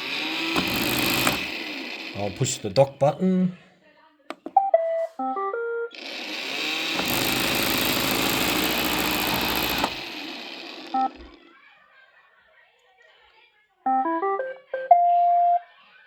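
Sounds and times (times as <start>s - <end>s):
robot vacuum motors running: 0.0s - 2.8s, 6.0s - 11.4s
robot vacuum beeping tune: 4.4s - 10.1s, 10.9s - 11.4s, 13.9s - 15.6s.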